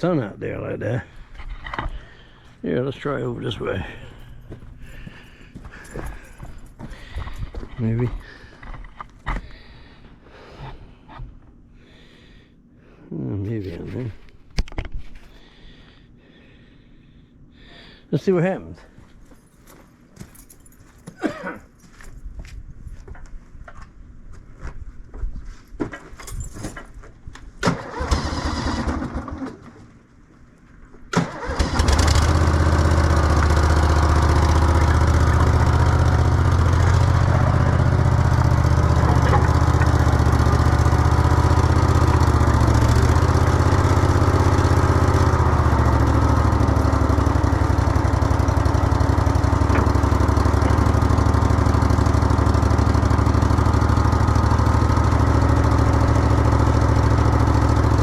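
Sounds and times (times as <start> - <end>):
skid steer engine running: 0.9 - 10.0, 27.7 - 29.7, 31.2 - 58.0
starter clicks and clatter: 31.2 - 54.0.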